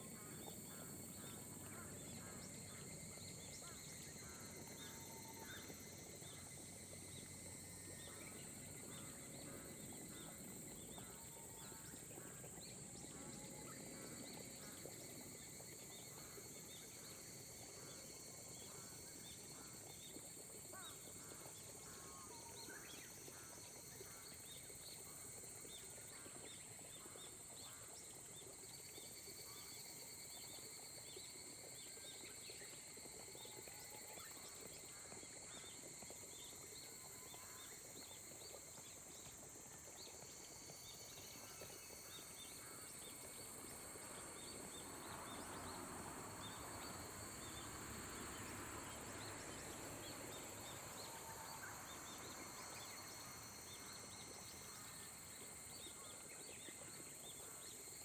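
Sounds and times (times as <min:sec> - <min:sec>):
high insect drone: 0:00.0 - 0:58.0.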